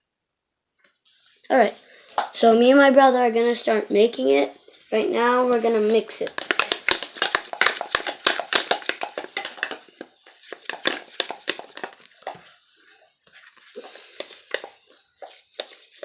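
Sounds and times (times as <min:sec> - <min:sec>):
spoon stirring slime: 0:04.7 - 0:16.0.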